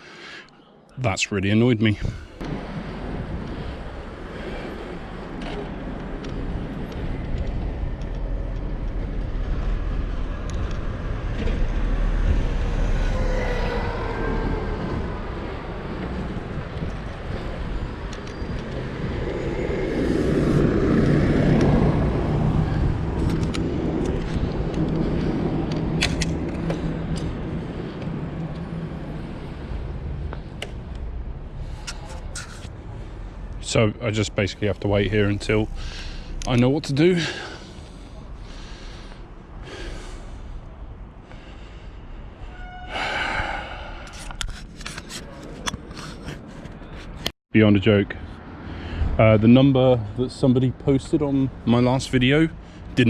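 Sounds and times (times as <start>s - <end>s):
vehicles passing: 0.6s - 53.0s
heavy vehicle engine hum: 2.0s - 47.3s.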